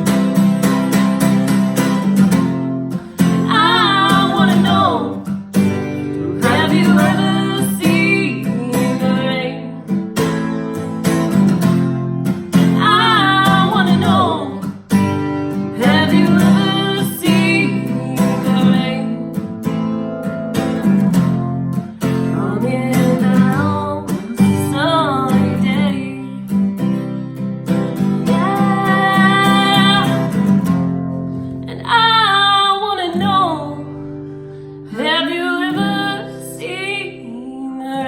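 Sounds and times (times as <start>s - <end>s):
acoustic guitar strumming: 0.0s - 38.0s
person singing: 3.2s - 9.9s, 12.6s - 14.8s, 15.8s - 19.3s, 28.2s - 30.5s.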